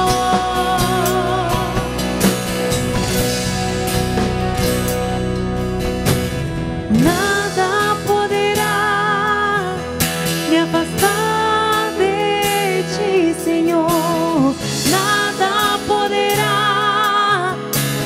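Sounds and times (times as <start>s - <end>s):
worship band playing slow song: 0.0s - 18.0s
drum hits: 1.8s - 8.8s.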